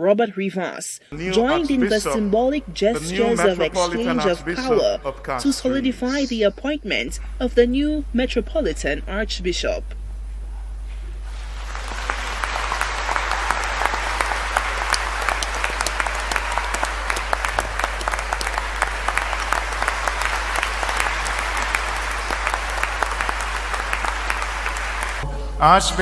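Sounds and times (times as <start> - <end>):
crowd applauding: 1.1 - 6.3, 11.2 - 25.2.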